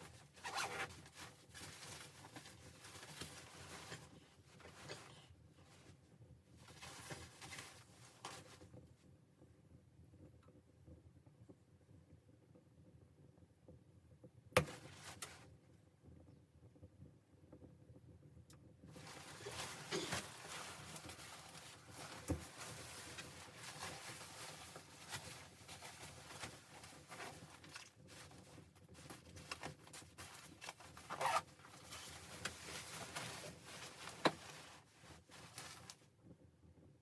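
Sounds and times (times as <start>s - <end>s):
rustling and handling noise: 0.0s - 9.1s, 14.6s - 15.6s, 18.8s - 36.4s.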